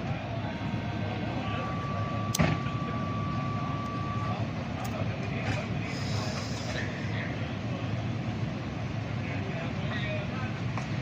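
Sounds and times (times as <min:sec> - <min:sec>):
fire engine idling: 0:00.0 - 0:11.0
high-pitched tone: 0:00.4 - 0:04.5.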